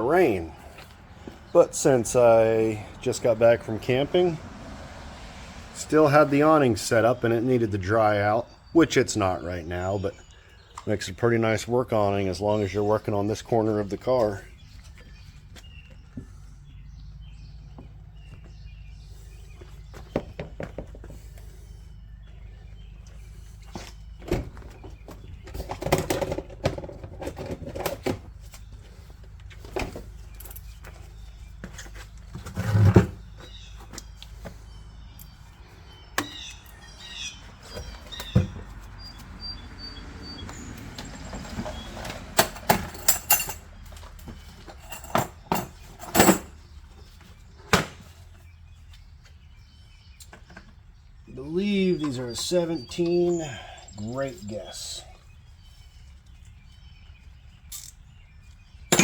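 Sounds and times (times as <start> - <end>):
faint birds chirping: 0.0 - 59.0
hand tools clattering: 41.3 - 46.6.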